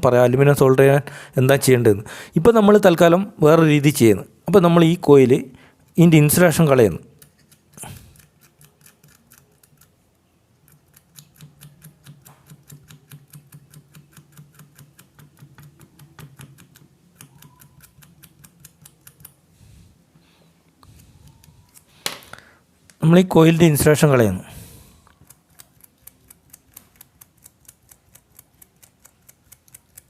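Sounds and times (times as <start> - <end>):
blade scraping wire: 5.9 - 10.0.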